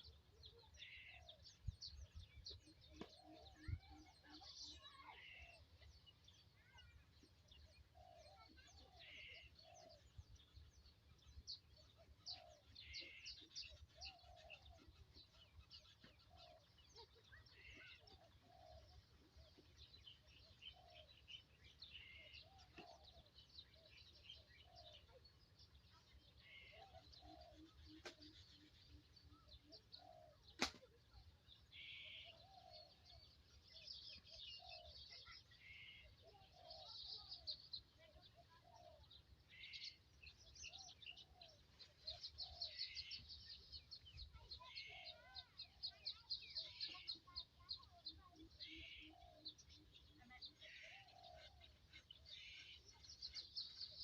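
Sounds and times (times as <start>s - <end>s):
birds chirping: 0.0s - 54.0s.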